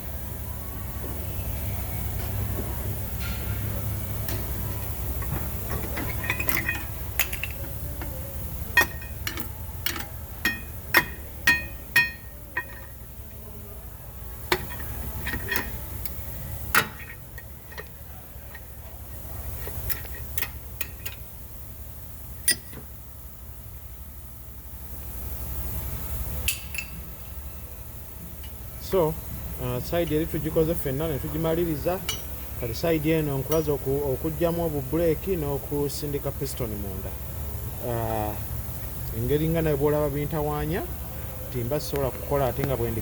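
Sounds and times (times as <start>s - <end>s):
steady low hum: 0.0s - 43.0s
metal clinks of brake parts: 4.2s - 13.0s, 14.5s - 18.7s, 22.4s - 22.9s, 26.4s - 27.0s, 32.0s - 32.4s.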